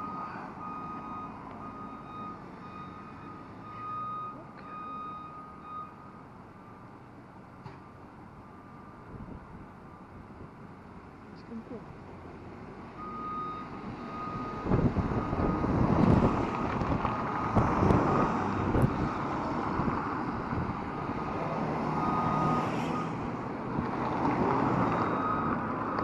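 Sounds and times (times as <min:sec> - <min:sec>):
wind buffeting microphone: 0:14.4 - 0:21.4.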